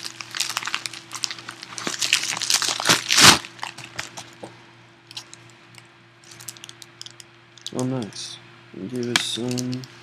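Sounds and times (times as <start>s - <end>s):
packaging tearing and crinkling: 0.0s - 4.4s.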